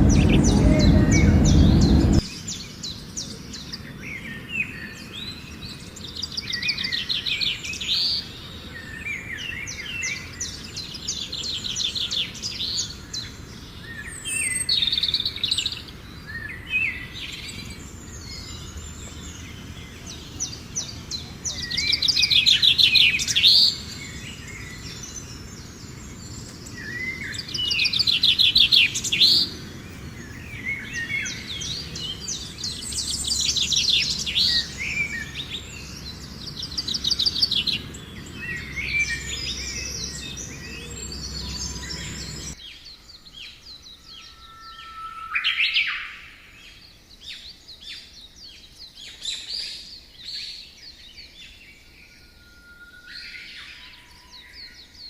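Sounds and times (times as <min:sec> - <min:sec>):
low background hum: 0:00.0 - 0:02.2
birds singing and calling: 0:00.0 - 0:55.0.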